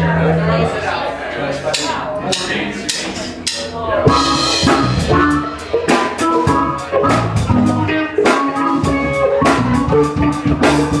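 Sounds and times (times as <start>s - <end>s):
drum kit beat: 1.7s - 11.0s
keyboard playing: 3.4s - 11.0s
electric guitar: 4.1s - 11.0s.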